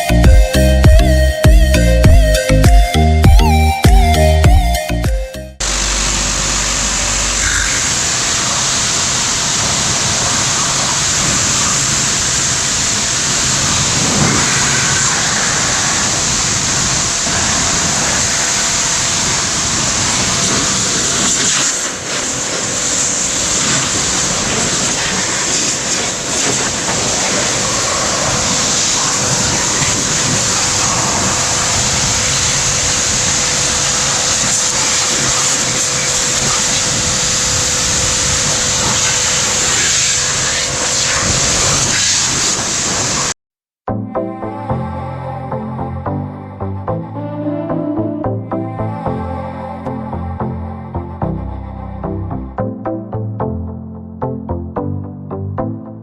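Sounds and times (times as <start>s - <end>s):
pressure washer running: 5.6s - 43.2s.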